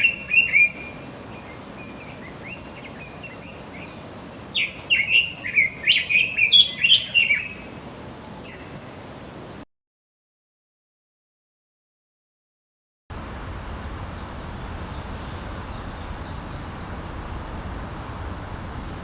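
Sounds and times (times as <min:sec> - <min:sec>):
bird singing warbling phrase: 0:13.4 - 0:19.0
faint short bird notes: 0:13.5 - 0:19.0.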